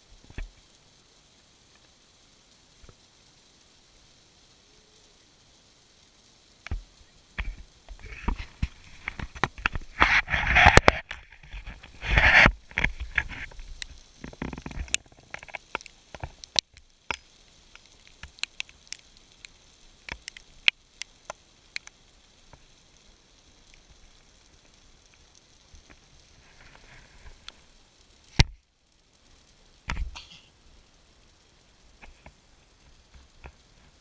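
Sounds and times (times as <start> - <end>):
snow hitting microphone: 7.4 - 16.4.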